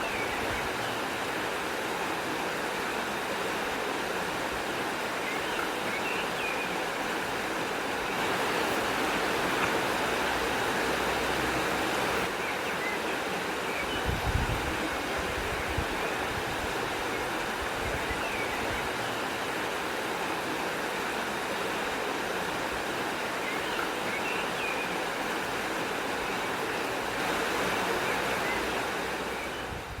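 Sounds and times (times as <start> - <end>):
river water flowing: 0.0 - 30.0.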